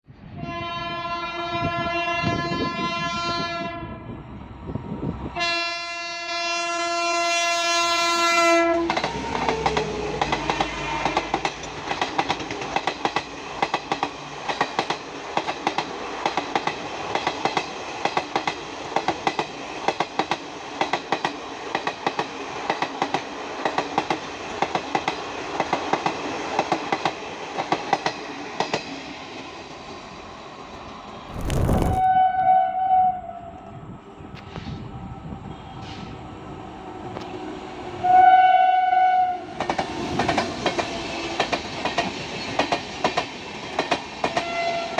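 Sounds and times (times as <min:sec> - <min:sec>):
train horn blasts: 0:00.4 - 0:04.1, 0:05.4 - 0:12.0, 0:38.0 - 0:39.5.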